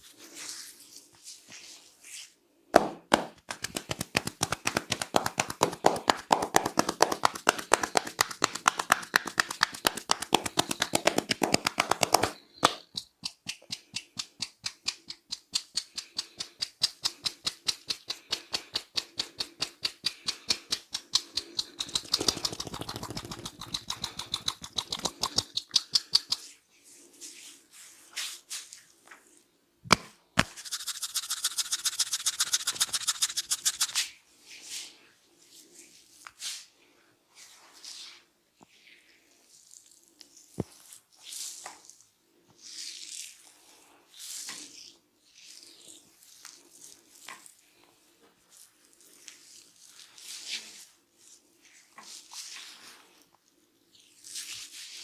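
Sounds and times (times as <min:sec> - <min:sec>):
hand strikes of head massage: 0:02.8 - 0:26.4, 0:29.9 - 0:34.0
sharp snap: 0:02.8 - 0:26.4, 0:29.9 - 0:34.0.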